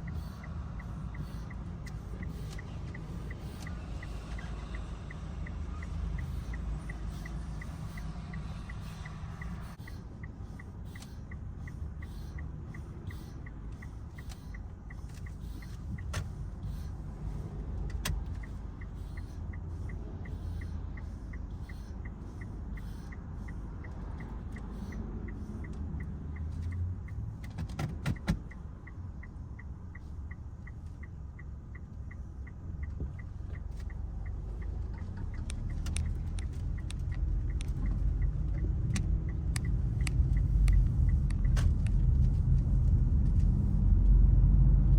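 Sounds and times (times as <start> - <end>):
engine and road rumble: 0.0 - 44.9
light ticking: 0.0 - 44.9
sharp clicks: 17.8 - 43.6.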